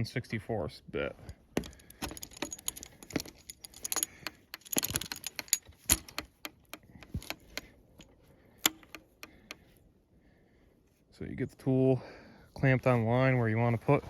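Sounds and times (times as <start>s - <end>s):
hand tool clicking on plastic tubing: 1.6s - 9.7s.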